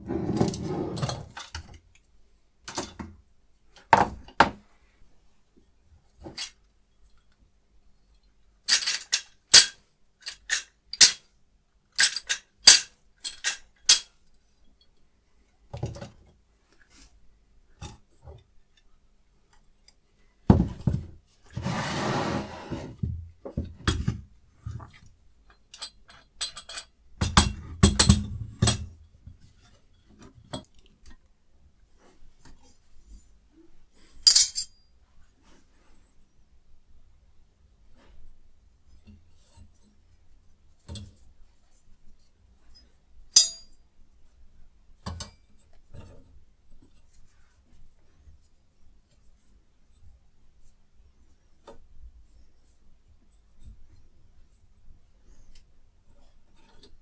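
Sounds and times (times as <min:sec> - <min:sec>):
metal parts clinking: 0:08.7 - 0:11.2, 0:12.0 - 0:14.1, 0:25.7 - 0:28.9, 0:34.2 - 0:34.8, 0:43.4 - 0:43.7
short scraping noise: 0:21.6 - 0:23.0.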